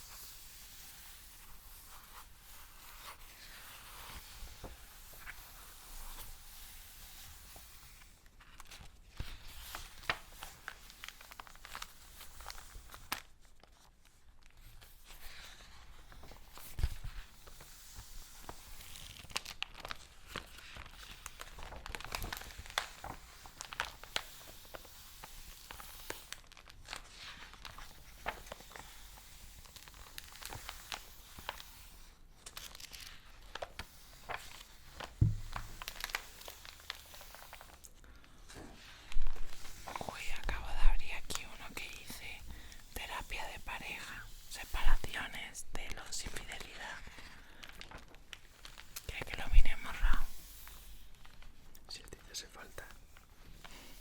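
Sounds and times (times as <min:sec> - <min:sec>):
paper crinkling and rustling: 0:00.0 - 0:54.0
heavy thumps: 0:35.2 - 0:35.8.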